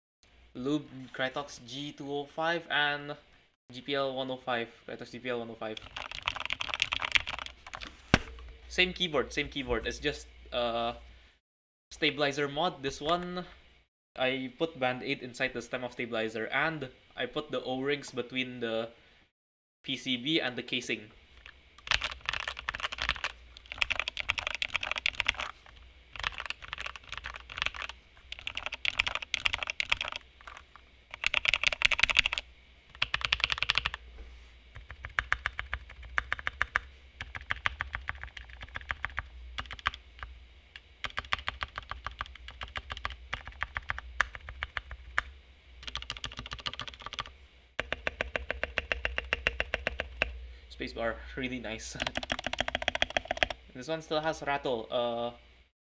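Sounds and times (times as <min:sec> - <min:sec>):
mechanical keyboard typing: 0:05.8 - 0:07.8, 0:21.8 - 0:25.6, 0:26.2 - 0:34.0, 0:34.8 - 0:40.0, 0:41.0 - 0:50.4, 0:51.9 - 0:53.6.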